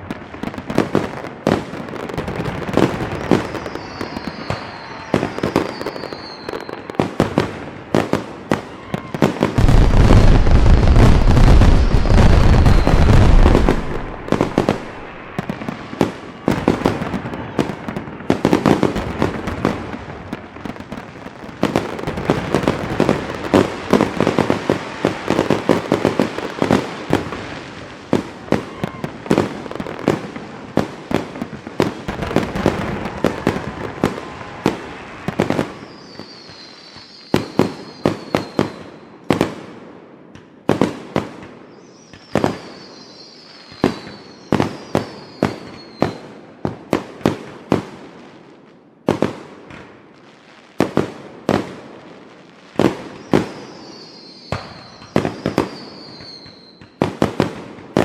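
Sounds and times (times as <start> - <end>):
fireworks crackling rumble: 0.0 - 48.2, 49.0 - 58.0
fireworks bangs: 0.0 - 48.4, 49.0 - 58.0
falling firework whistle: 1.5 - 19.8, 28.1 - 30.2, 31.8 - 39.2, 41.7 - 46.3, 52.8 - 57.3.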